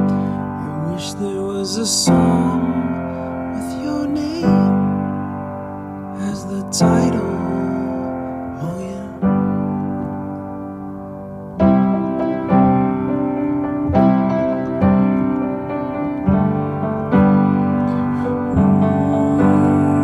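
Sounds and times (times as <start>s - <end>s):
piano chords ringing: 0.0s - 20.0s.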